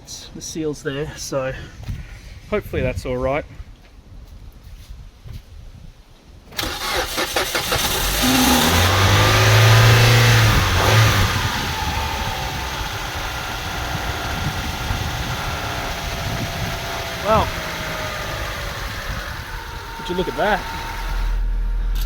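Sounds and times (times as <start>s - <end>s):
car engine starting and idling: 6.6s - 22.0s.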